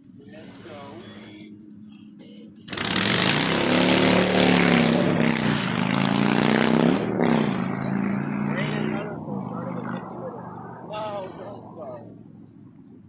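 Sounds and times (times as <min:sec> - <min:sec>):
vehicle engine running: 0:00.0 - 0:13.0
loud rushing noise: 0:02.7 - 0:11.8.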